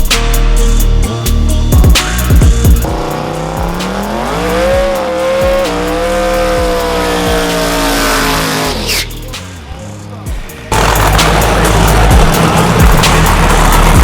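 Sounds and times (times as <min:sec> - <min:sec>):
music beat: 0:00.0 - 0:14.0
car engine at full throttle: 0:02.8 - 0:09.3, 0:10.7 - 0:14.0.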